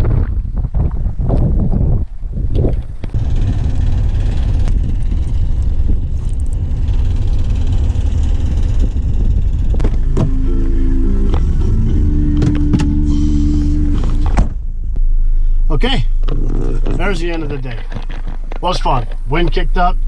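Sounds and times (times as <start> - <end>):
wind buffeting microphone: 0.0 - 19.3
music: 10.0 - 14.4.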